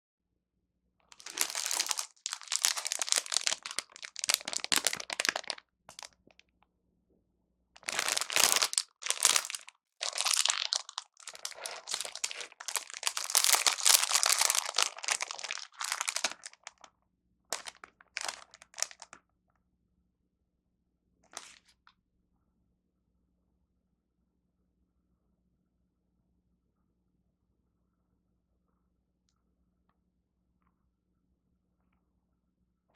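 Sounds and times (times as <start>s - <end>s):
plastic food packaging crinkling: 1.1s - 6.4s, 7.8s - 16.9s, 17.5s - 19.2s.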